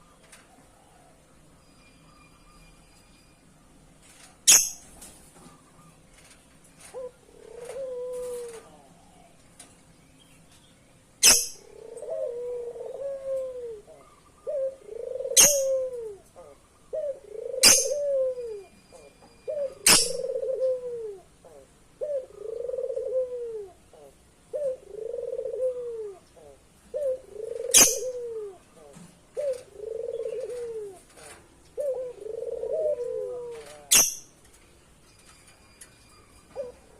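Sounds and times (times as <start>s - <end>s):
dove cooing: 4.5s - 9.4s, 11.2s - 34.4s, 36.2s - 36.9s.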